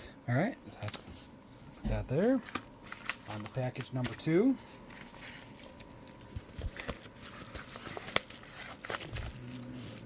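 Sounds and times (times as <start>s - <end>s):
wrapping crinkling and tearing: 2.2s - 10.0s.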